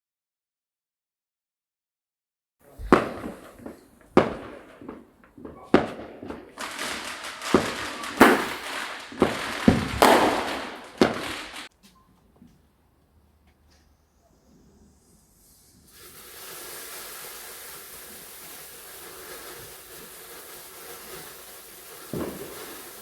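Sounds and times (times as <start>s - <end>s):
fireworks bangs: 2.6s - 11.7s, 15.9s - 23.0s
fireworks crackling: 2.6s - 11.7s, 15.4s - 23.0s.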